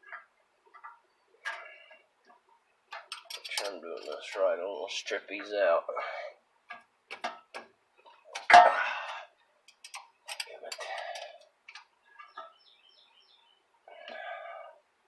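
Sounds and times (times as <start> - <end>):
wrench clicking and scraping: 2.9 - 4.4, 9.7 - 11.8.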